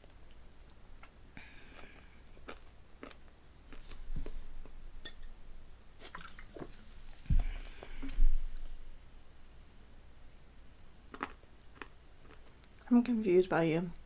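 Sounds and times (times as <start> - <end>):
chewing candies: 1.0 - 4.0, 11.1 - 12.8.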